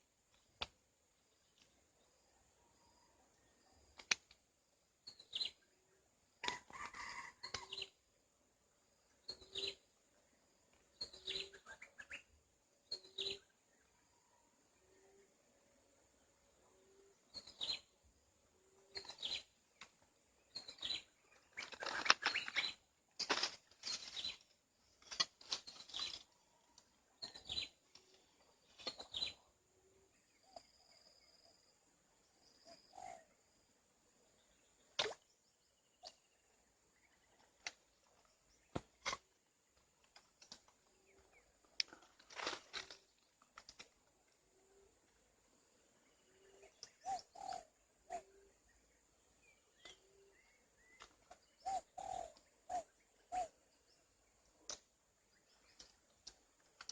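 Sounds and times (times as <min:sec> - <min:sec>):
birds chirping: 0:46.1 - 0:54.5.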